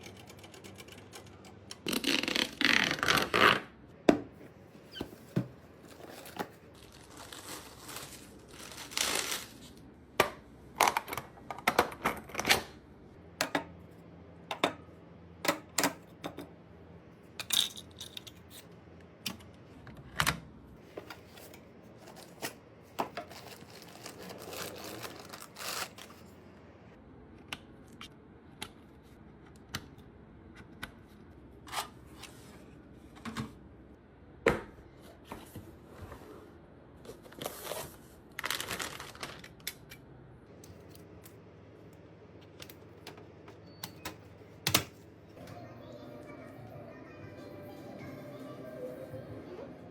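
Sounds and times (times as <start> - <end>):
rustling or scraping: 4.7 - 9.8, 20.8 - 26.4.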